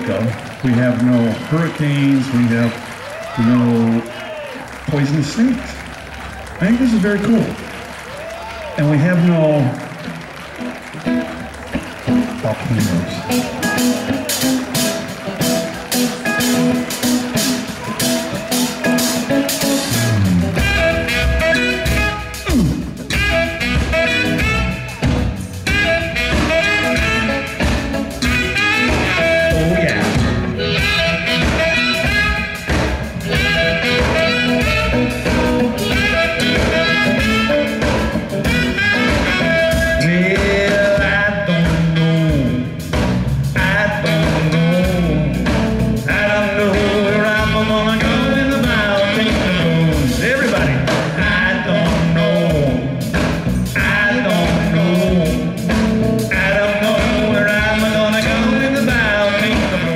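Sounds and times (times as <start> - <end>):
live band playing: 0.0 - 59.9
person singing: 43.6 - 53.0, 53.8 - 55.6, 56.2 - 59.9.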